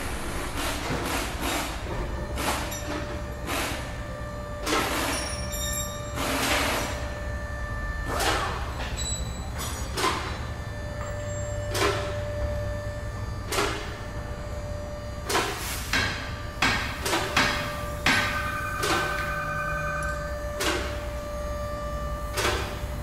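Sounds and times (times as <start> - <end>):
steady low hum: 0.0 - 23.0
tool strikes: 15.3 - 21.1.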